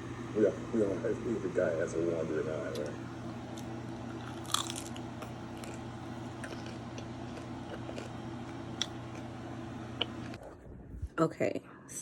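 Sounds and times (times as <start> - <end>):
low electrical buzz: 0.0 - 12.0
chewing crackles and clicks: 2.7 - 9.3
crunch of biting crispy food: 3.6 - 9.3.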